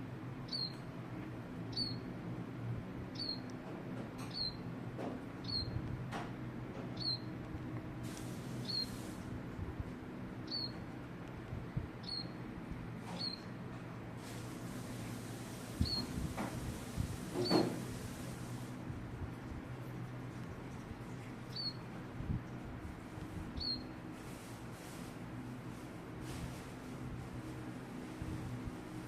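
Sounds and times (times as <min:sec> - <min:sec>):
baby bird cheeping: 0:00.4 - 0:00.9, 0:01.7 - 0:02.1, 0:03.1 - 0:03.5, 0:04.2 - 0:04.7, 0:05.4 - 0:05.8, 0:07.0 - 0:07.4, 0:08.4 - 0:09.2, 0:10.4 - 0:10.9, 0:12.0 - 0:12.4, 0:13.1 - 0:13.5, 0:15.6 - 0:16.2, 0:17.4 - 0:18.0, 0:21.5 - 0:21.9, 0:23.6 - 0:24.0.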